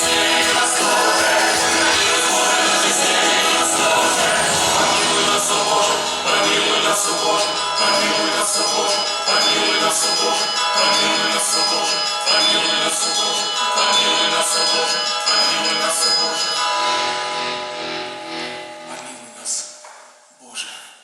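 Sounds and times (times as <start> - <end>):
bells ringing: 0.0 - 19.6.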